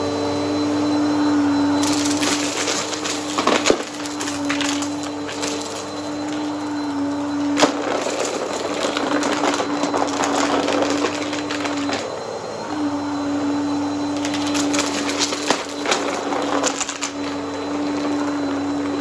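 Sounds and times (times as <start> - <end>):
vacuum cleaner motor hum: 0.0 - 19.0
brushroll crunching dry debris: 1.8 - 12.1, 14.2 - 19.0.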